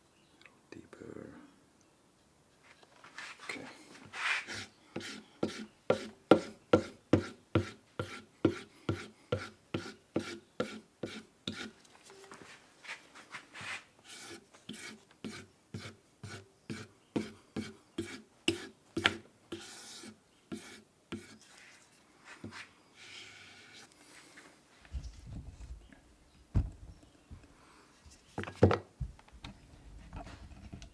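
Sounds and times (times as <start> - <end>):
knife stropped on leather: 4.1 - 4.7, 12.8 - 15.0.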